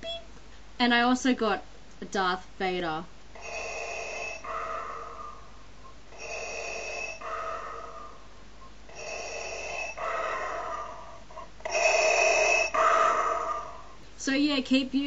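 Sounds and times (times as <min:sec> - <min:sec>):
mechanical respirator breathing: 0:03.4 - 0:14.0.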